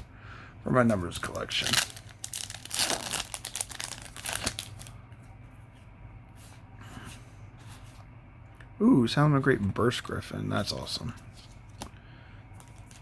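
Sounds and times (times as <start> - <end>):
cards rustling: 1.2 - 4.9, 12.6 - 13.0
foil wrapper tearing and crinkling: 1.5 - 4.9.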